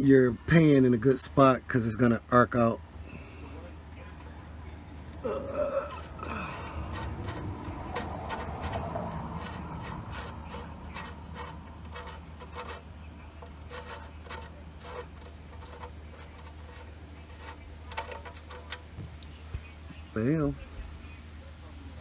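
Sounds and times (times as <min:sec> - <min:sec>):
drain plug unscrewing clicks: 0:05.9 - 0:19.4.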